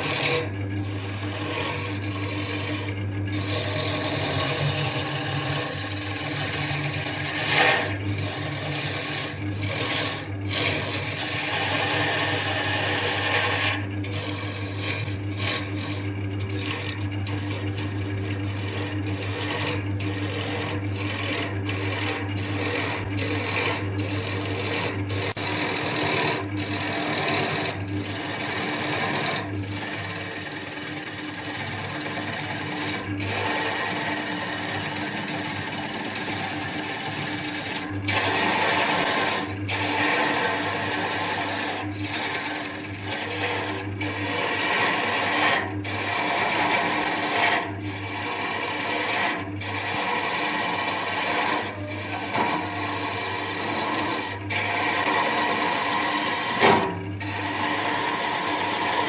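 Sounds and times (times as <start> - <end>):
tool cutting spinning wood: 0.0 - 59.0
wood lathe motor running: 0.0 - 59.0.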